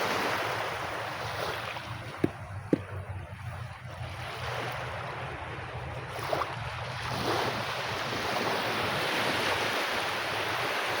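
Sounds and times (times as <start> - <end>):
sea surf breaking on beach: 0.0 - 2.3, 6.1 - 11.0
wind noise on microphone: 0.0 - 11.0.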